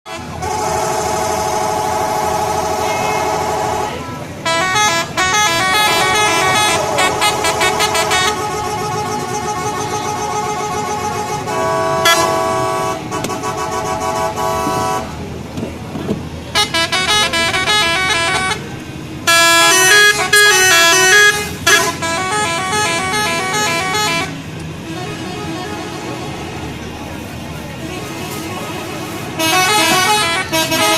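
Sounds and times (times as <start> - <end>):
bus musical horn: 0.0 - 15.3, 16.4 - 30.9.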